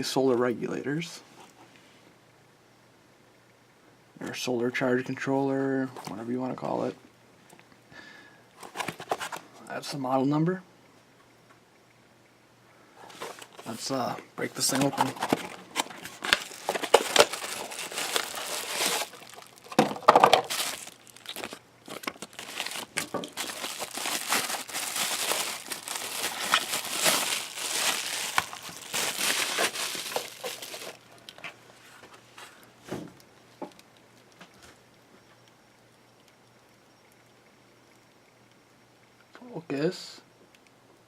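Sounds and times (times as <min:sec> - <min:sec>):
packaging crinkling and rustling: 0:08.6 - 0:09.4, 0:13.0 - 0:32.6.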